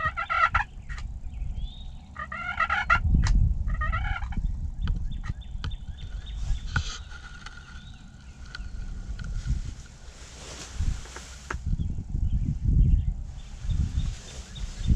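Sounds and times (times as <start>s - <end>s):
turkey gobbling: 0.0s - 1.0s, 2.1s - 3.1s, 3.7s - 4.4s
wind noise: 0.0s - 14.9s.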